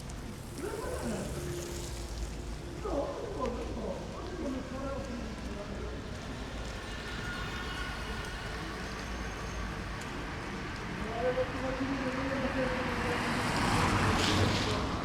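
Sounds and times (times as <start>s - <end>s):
car tyres hissing on wet street: 0.0s - 2.8s, 13.0s - 15.0s.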